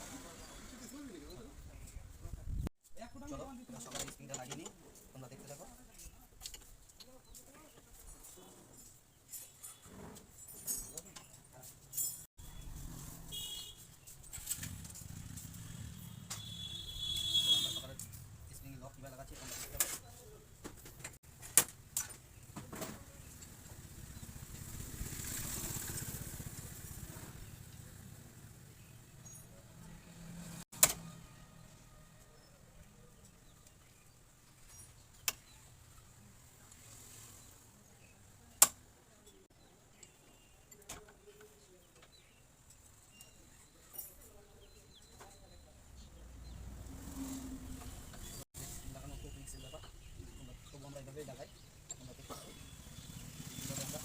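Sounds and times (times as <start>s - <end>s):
passing vehicle engine: 23.7s - 28.7s, 29.6s - 31.6s, 46.3s - 48.4s.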